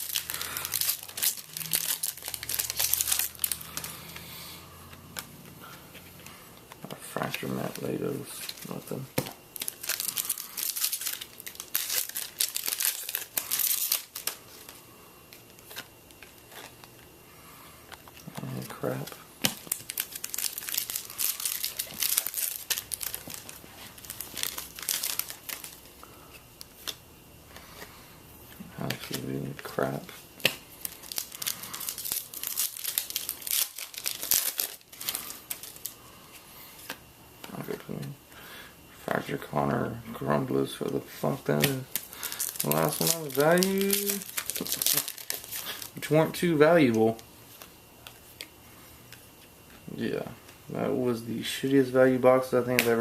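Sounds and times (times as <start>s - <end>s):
foil wrapper tearing and crinkling: 0.0s - 4.2s, 6.9s - 16.9s, 17.9s - 25.9s, 28.8s - 36.0s, 41.2s - 47.2s.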